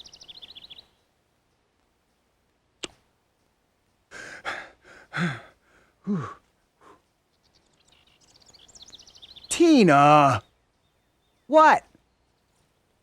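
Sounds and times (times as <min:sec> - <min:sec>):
rapid bird chirps: 0:00.0 - 0:01.6, 0:05.3 - 0:13.0.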